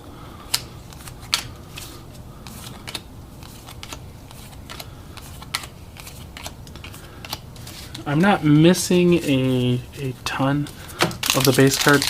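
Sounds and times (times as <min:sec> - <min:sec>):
cards flipping with clicks: 0:00.5 - 0:08.2.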